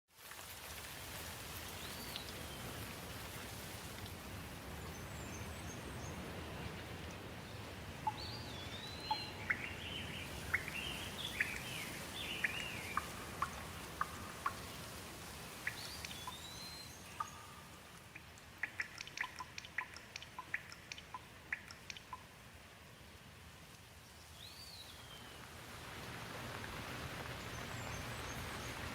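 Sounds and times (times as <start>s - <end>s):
rain hissing: 0.2s - 28.9s
sharp ticks: 17.1s - 22.3s.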